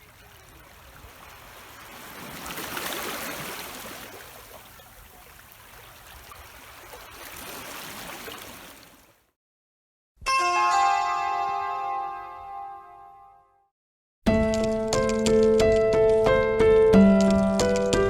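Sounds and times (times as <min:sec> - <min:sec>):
water rushing and trickling: 0:00.0 - 0:09.3.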